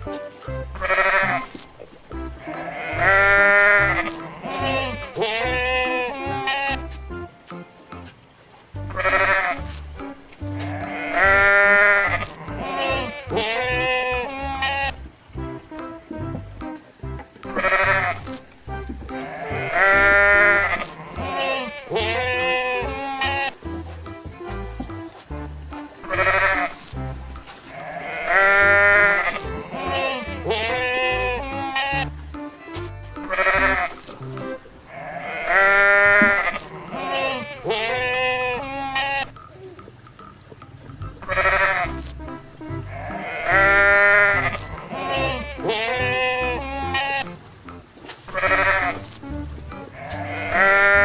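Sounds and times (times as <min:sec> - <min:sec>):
background music with bass line: 0:00.0 - 0:01.5, 0:02.1 - 0:08.2, 0:08.8 - 0:21.4, 0:22.0 - 0:27.7, 0:28.6 - 0:34.7, 0:40.9 - 0:51.0
sheep bleating: 0:02.4 - 0:07.0, 0:08.9 - 0:09.6, 0:10.6 - 0:15.0, 0:19.1 - 0:23.7, 0:26.0 - 0:26.8, 0:27.6 - 0:32.1, 0:33.2 - 0:34.0, 0:34.9 - 0:39.7, 0:42.9 - 0:47.4, 0:49.9 - 0:51.0.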